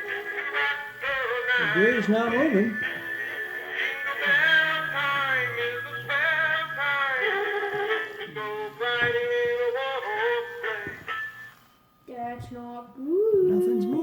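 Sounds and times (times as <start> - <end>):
toy speaker playing synthetic song: 0.0 - 11.6.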